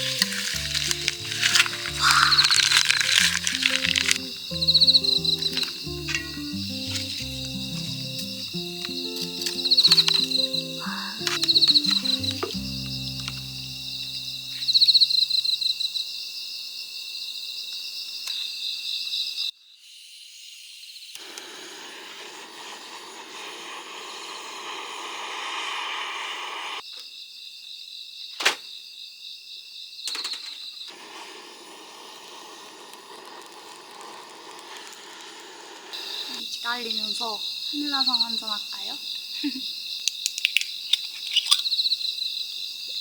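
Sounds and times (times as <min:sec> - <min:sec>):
even hissing noise: 0:00.0 - 0:15.8, 0:20.3 - 0:26.8, 0:30.9 - 0:39.6
crickets chirping: 0:00.0 - 0:43.0.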